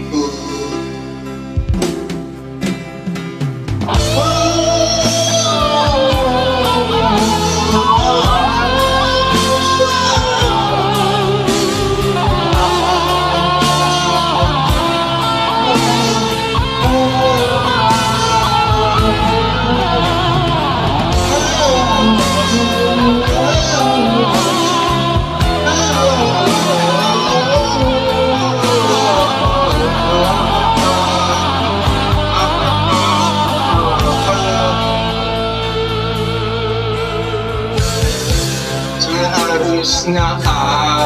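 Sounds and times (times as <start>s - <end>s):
lead electric guitar: 0.0s - 41.0s
rock band beat: 0.0s - 41.0s.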